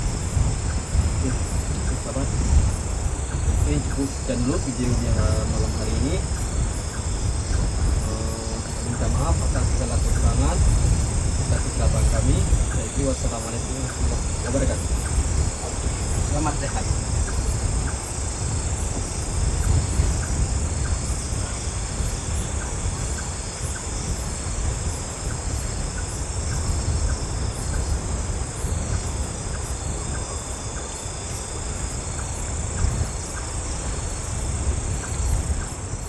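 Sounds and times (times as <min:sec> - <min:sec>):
crickets chirping: 0:00.0 - 0:36.0
strong wind rumbling: 0:00.0 - 0:36.0.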